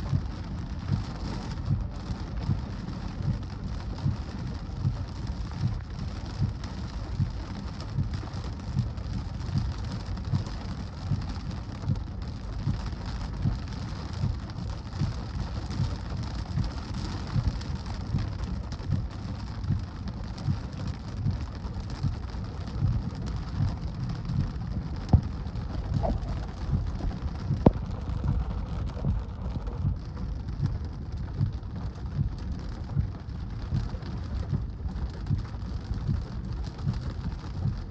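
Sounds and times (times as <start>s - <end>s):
heavy rain: 0.0s - 37.9s
wind buffeting microphone: 23.5s - 31.5s.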